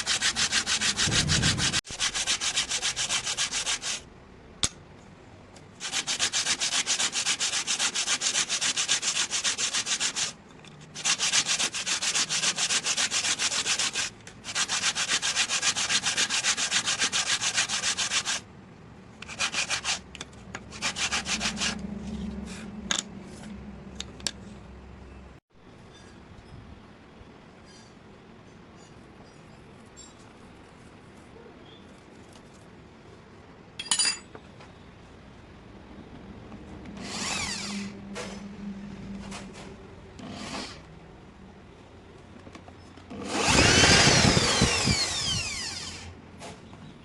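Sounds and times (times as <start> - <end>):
sandpaper rubbing strokes: 0.0 - 4.1, 5.8 - 18.5, 19.2 - 20.0, 20.7 - 22.7.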